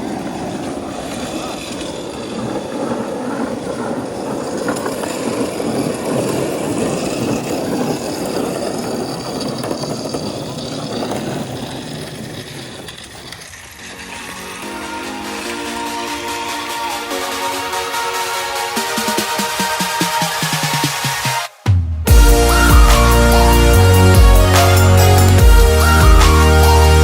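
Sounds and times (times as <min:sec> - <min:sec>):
vehicle rumbling: 0:22.1 - 0:27.0.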